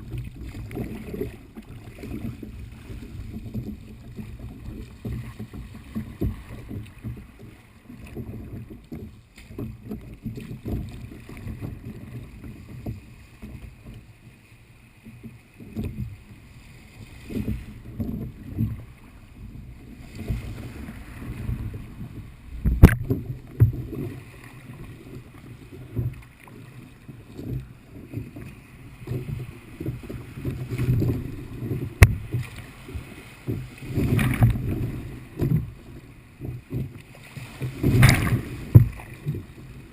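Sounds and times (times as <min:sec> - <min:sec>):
water sloshing against hull: 0:00.0 - 0:39.9
wind on microphone: 0:27.6 - 0:39.9.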